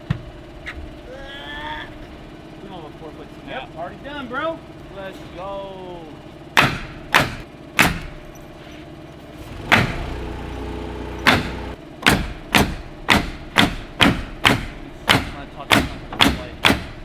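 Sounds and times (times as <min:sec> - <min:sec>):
nails being driven into wood: 0:06.6 - 0:08.2, 0:09.6 - 0:10.4, 0:11.2 - 0:17.0.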